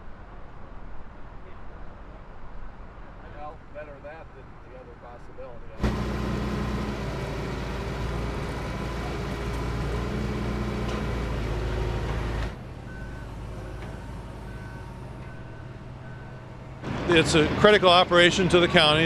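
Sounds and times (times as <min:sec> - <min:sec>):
diesel engine hum: 0:05.7 - 0:19.0
quieter engine running: 0:05.7 - 0:19.0
reversing alarm beeping: 0:12.6 - 0:16.8.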